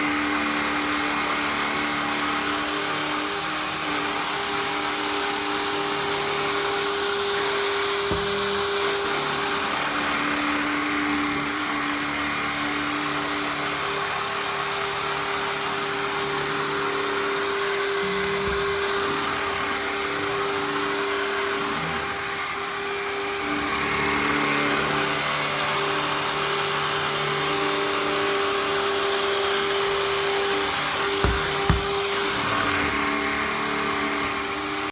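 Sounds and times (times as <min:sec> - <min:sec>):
vacuum cleaner running: 0:00.0 - 0:34.9
low knocks: 0:31.2 - 0:32.1.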